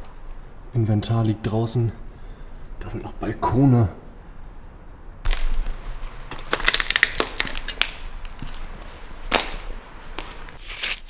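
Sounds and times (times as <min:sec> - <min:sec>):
debris crunching underfoot: 0:05.3 - 0:11.0
sharp crack: 0:05.3 - 0:11.0.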